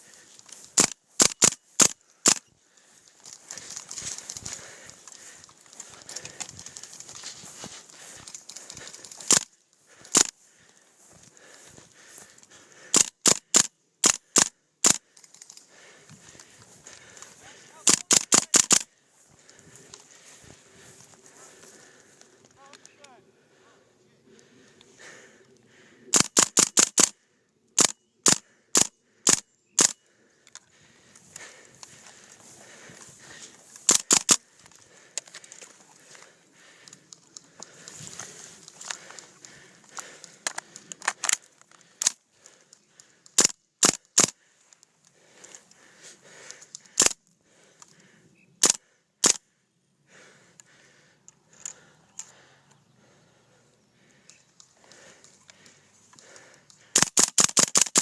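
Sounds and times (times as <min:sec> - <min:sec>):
faint crackling and rustling: 0:02.6 - 0:12.6, 0:30.4 - 0:43.3.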